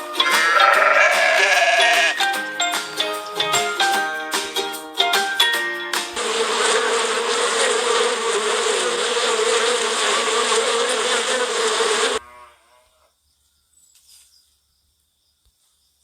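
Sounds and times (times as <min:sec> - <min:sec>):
bees buzzing: 0:00.0 - 0:02.4, 0:05.9 - 0:12.5
plucked music: 0:00.0 - 0:06.2.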